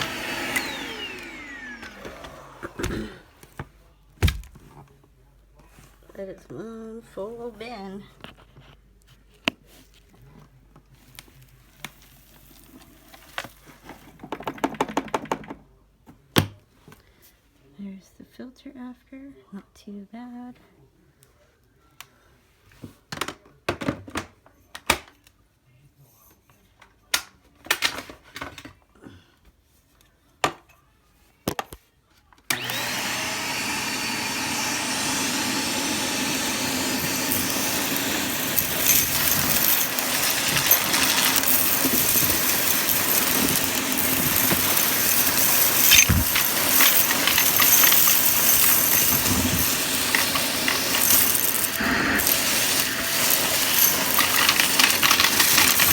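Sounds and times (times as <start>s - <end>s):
vacuum cleaner running: 0.0s - 3.4s, 32.5s - 55.9s
vacuum parts clicking and knocking: 0.0s - 4.7s, 13.2s - 15.7s, 32.5s - 55.9s
debris crackling in vacuum: 35.7s - 55.9s.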